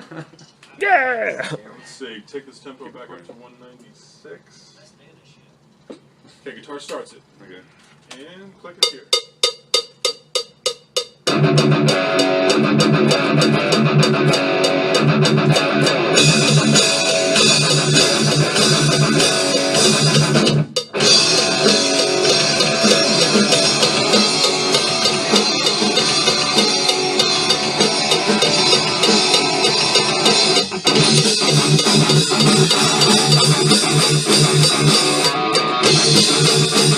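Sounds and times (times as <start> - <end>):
rock band playing loudly: 11.2 - 36.9.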